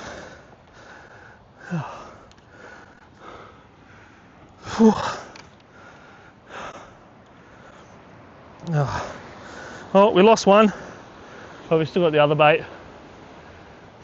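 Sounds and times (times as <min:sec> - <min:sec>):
man sighing and exclaiming: 0:01.6 - 0:02.2, 0:04.6 - 0:05.4, 0:08.6 - 0:09.2.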